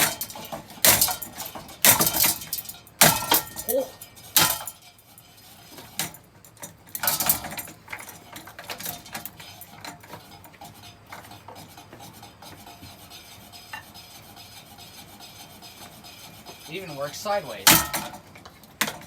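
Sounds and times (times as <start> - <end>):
sharp metallic knocks: 0.0 - 3.8, 4.4 - 4.8, 17.6 - 18.2
ceiling fan rattling: 0.0 - 19.0.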